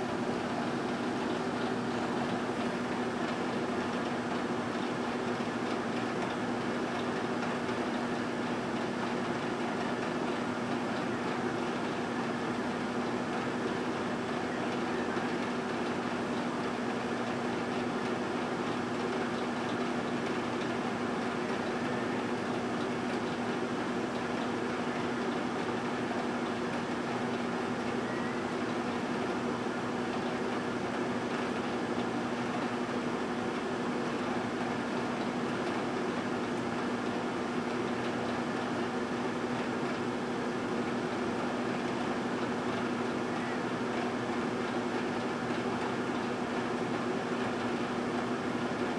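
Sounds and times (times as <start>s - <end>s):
microwave electrical hum: 0.0s - 48.9s
microwave fan rushing: 0.0s - 48.9s.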